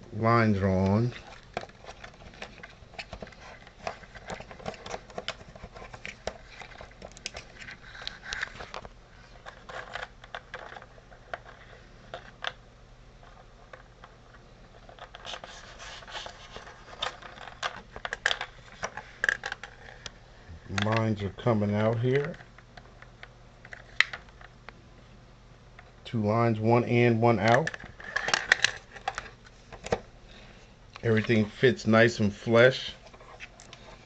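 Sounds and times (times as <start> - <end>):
small handling clicks and scrapes: 0.8 - 12.6.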